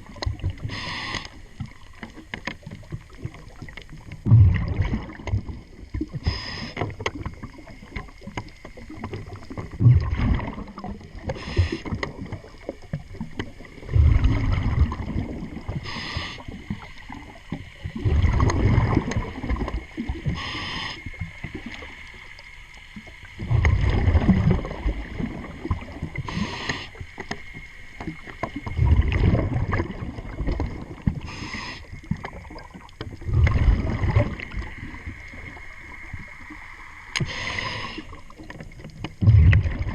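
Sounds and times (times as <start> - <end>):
exhaled bubbles underwater: 0.0 - 39.9
regulator inhale hiss: 0.6 - 1.5, 6.1 - 7.0, 11.2 - 12.0, 15.7 - 16.8, 20.2 - 21.2, 26.2 - 27.4, 31.2 - 32.1, 37.2 - 38.3.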